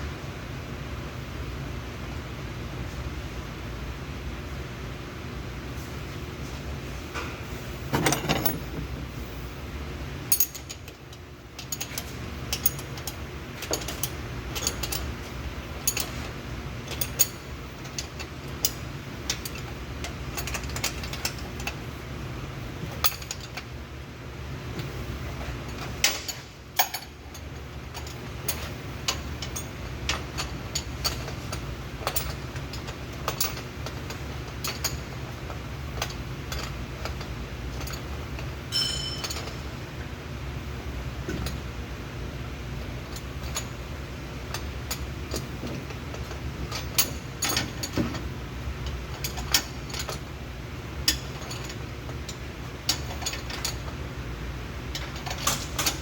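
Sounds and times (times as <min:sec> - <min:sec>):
steady low hum: 0:00.0 - 0:56.0
metallic clinks of hand tools: 0:38.7 - 0:39.6.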